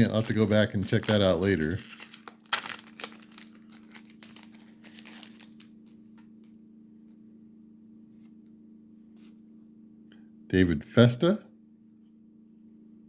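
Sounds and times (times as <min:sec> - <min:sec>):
foil wrapper crinkling: 0:00.0 - 0:06.4
steady low hum: 0:00.0 - 0:13.0.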